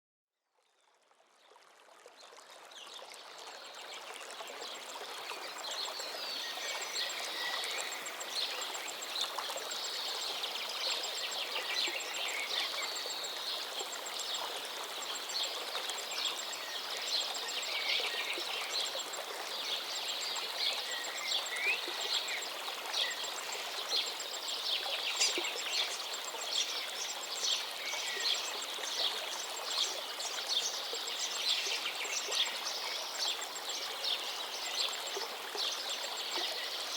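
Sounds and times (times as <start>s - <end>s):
river water flowing: 0.9s - 36.9s
songbirds chirping: 3.2s - 36.9s.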